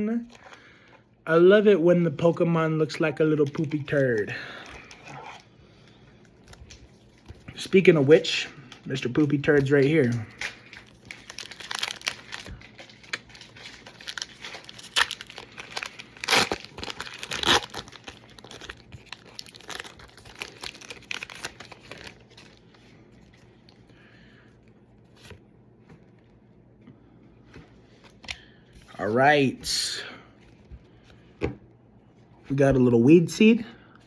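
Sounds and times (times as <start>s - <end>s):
foil wrapper crinkling: 8.6s - 23.7s
foil wrapper ripping: 9.7s - 22.6s.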